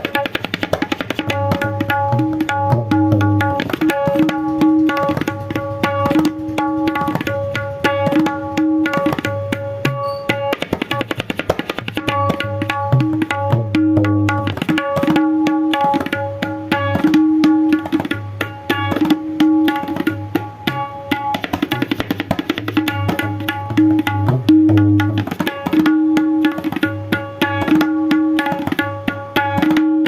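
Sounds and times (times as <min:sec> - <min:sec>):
tabla bass strokes: 0:00.0 - 0:30.0
tabla treble drum strokes: 0:00.0 - 0:30.0.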